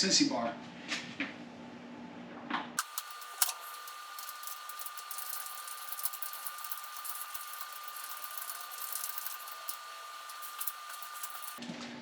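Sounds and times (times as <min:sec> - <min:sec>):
steady high-pitched whine: 0:02.8 - 0:11.6.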